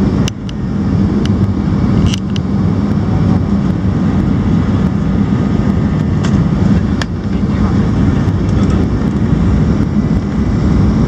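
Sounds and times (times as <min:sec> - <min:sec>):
jet engines roaring in cabin: 0:00.0 - 0:11.0.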